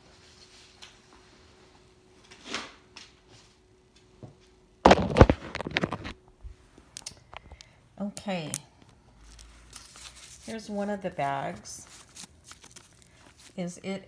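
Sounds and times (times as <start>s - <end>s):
packaging rustling: 4.9s - 6.2s, 8.8s - 13.6s.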